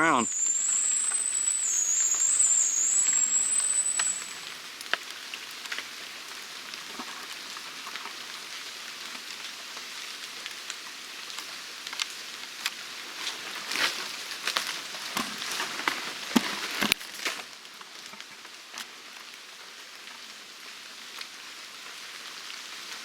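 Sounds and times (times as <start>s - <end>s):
high-pitched steady whine: 0.0s - 4.6s
rain falling on leaves: 0.0s - 23.0s.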